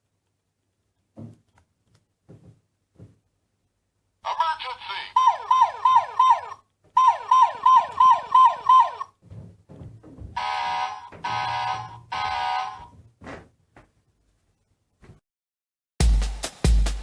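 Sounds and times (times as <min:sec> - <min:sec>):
toy siren yelping: 0:04.3 - 0:09.2, 0:10.4 - 0:12.9
toy horn blasts: 0:10.4 - 0:12.9.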